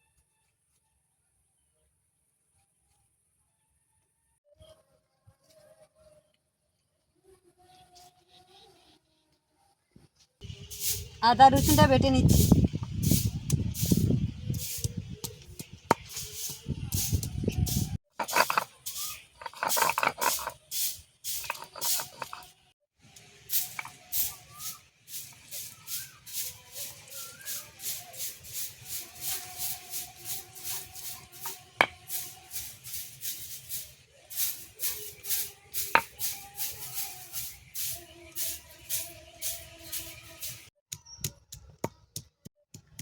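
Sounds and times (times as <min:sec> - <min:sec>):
grinding stone scraping: 0:18.2 - 0:20.6, 0:21.3 - 0:22.5, 0:25.2 - 0:33.9.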